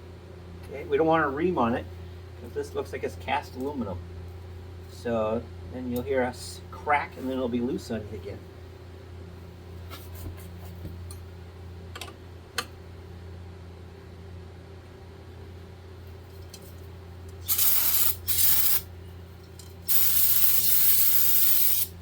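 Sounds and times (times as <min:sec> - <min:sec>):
aerosol spray bursts: 0:17.5 - 0:18.8, 0:19.9 - 0:21.9.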